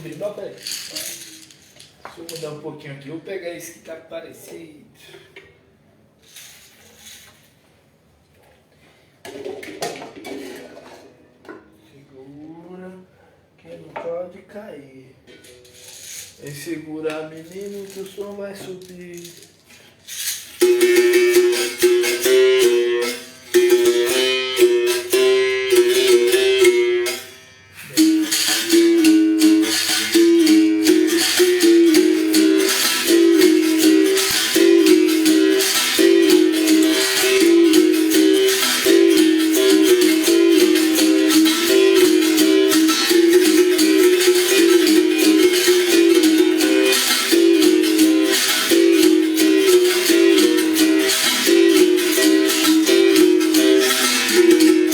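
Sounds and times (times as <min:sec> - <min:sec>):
shaker rattle: 0:00.0 - 0:02.6, 0:06.2 - 0:07.7, 0:15.4 - 0:16.7, 0:17.3 - 0:54.9.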